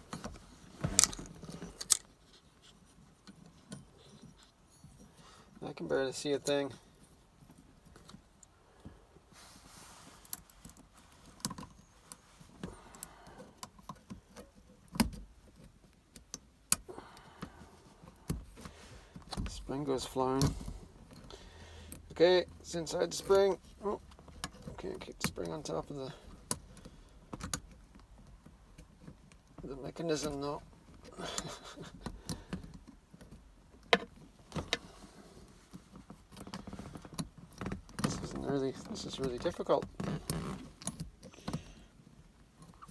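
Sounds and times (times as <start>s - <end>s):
metal parts clicking and clinking: 0.8s - 2.1s
small metal clicks and taps: 1.8s - 2.0s.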